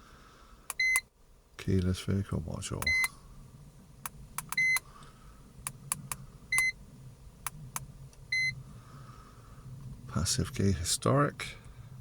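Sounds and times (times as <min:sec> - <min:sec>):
faint low hum: 0:00.0 - 0:12.0
high key-press beep: 0:00.7 - 0:01.0, 0:02.8 - 0:03.1, 0:04.4 - 0:04.8, 0:06.5 - 0:06.8.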